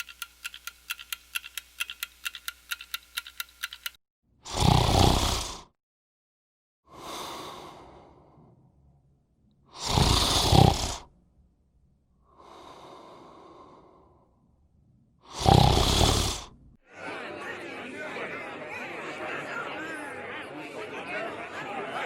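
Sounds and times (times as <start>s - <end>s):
heavy rasping breathing: 12.2s - 14.4s.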